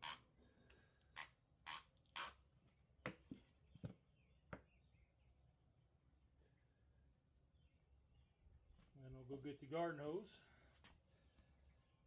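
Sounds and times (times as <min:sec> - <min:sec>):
soap bottle squirts: 0:01.2 - 0:02.4.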